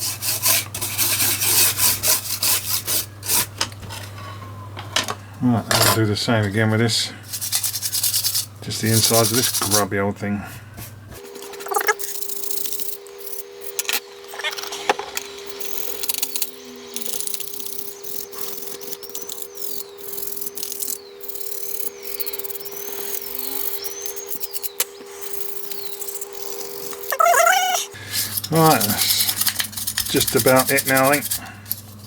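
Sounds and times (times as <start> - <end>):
toothbrush scrubbing plastic: 7.3 - 9.9, 15.5 - 32.0
faint high squeaks: 26.0 - 28.0.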